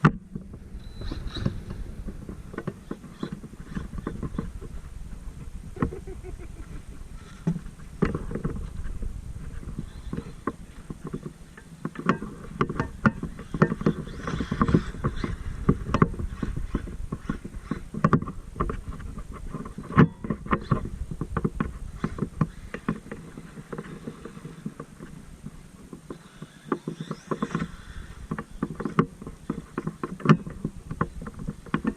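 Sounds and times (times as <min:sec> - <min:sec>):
rc truck wheels clattering: 0:07.1 - 0:25.3.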